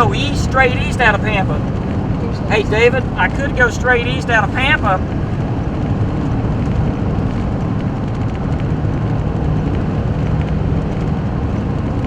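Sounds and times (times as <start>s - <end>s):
car engine hum: 0.0s - 8.6s.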